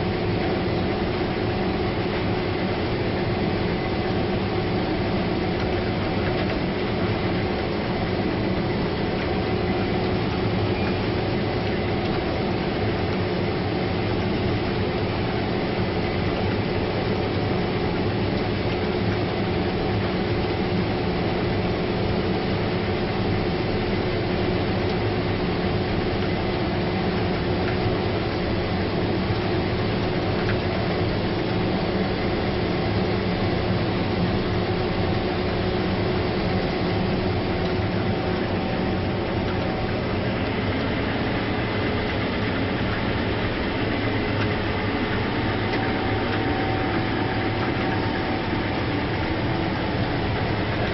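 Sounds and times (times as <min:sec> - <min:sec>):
combine harvester drone: 0:00.0 - 0:50.9
steady machine whine: 0:00.0 - 0:50.9.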